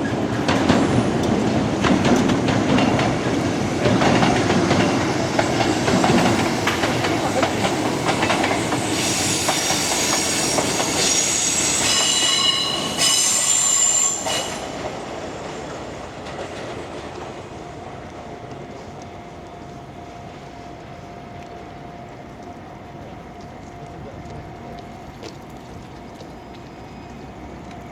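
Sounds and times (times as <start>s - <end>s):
train wheels clattering: 0.0s - 18.7s
high-pitched wheel squeal: 8.9s - 14.7s.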